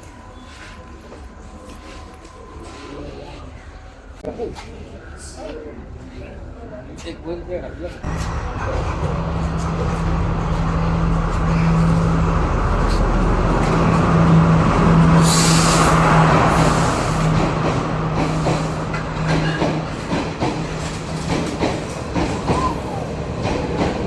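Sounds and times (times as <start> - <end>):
diesel train engine droning: 8.0 - 24.0
air brake hiss: 15.2 - 16.0.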